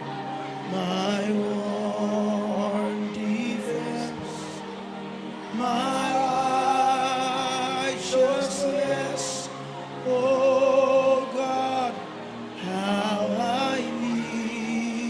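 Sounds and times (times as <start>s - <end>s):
soft instrumental backing: 0.0s - 15.0s
worship singing with vibrato: 0.0s - 15.0s.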